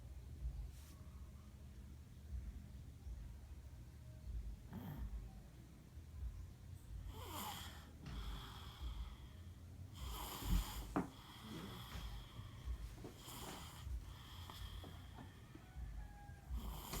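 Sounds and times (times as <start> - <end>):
soft breaths: 4.2 - 17.0
child snoring: 4.7 - 5.1, 7.1 - 9.2, 10.0 - 15.2, 16.5 - 17.0.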